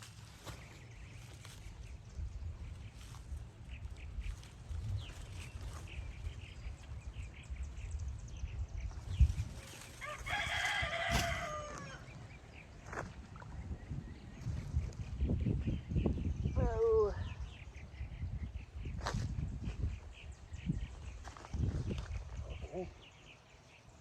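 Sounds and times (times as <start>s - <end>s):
rooster crowing: 10.0s - 12.1s.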